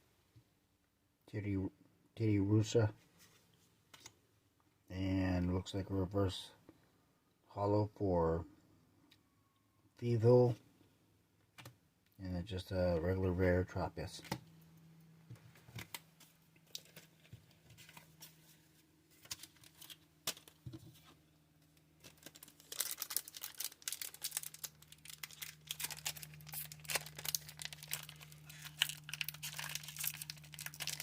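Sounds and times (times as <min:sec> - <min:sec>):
foil wrapper crinkling and tearing: 0:21.7 - 0:31.0.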